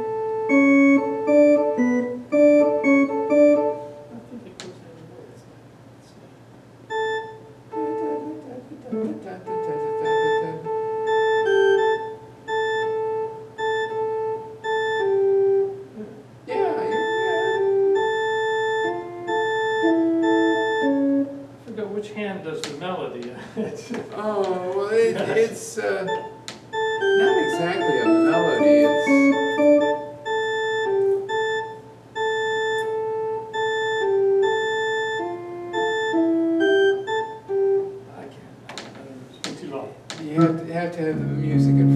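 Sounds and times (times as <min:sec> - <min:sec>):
electronic organ held notes: 0:00.0 - 0:04.2, 0:06.9 - 0:21.6, 0:26.0 - 0:38.1, 0:40.4 - 0:41.9.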